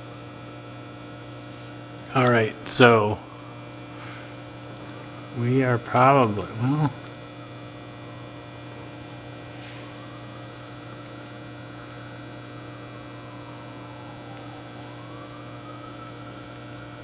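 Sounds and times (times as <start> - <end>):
electrical hum: 2.1 - 3.5.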